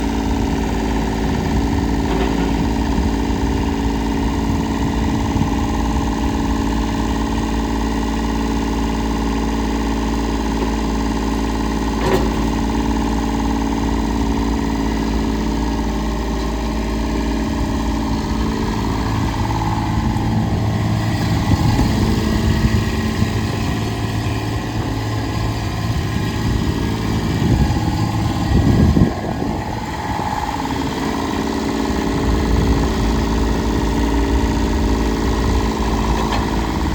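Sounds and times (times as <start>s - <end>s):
skid steer engine running: 0.0s - 36.9s.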